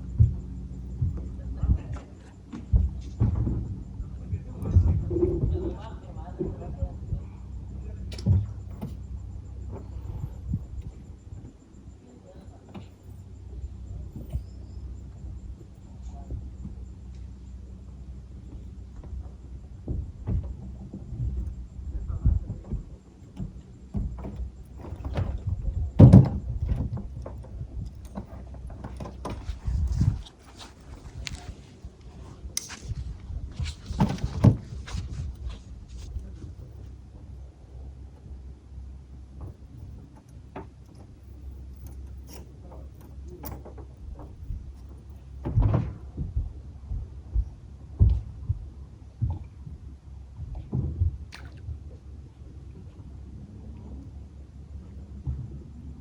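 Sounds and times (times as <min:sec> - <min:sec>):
boats knocking and thumping: 0:00.0 - 0:56.0
low rumble: 0:00.0 - 0:56.0
knocks and thuds: 0:02.5 - 0:04.0, 0:18.5 - 0:32.0, 0:32.7 - 0:36.8, 0:43.0 - 0:49.8
heavy thumps: 0:19.8 - 0:36.8.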